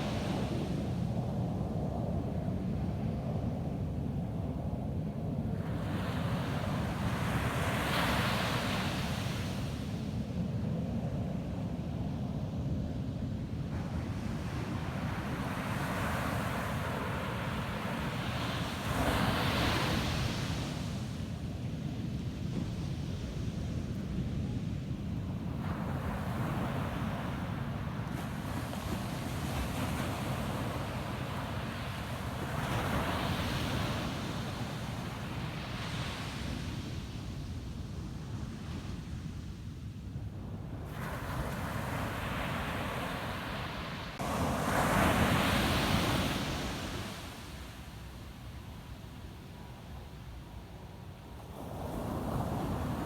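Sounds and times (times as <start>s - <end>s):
wind rumble on microphone: 0.0s - 53.0s
ocean waves breaking on beach: 13.5s - 21.5s, 24.6s - 37.4s, 40.6s - 53.0s.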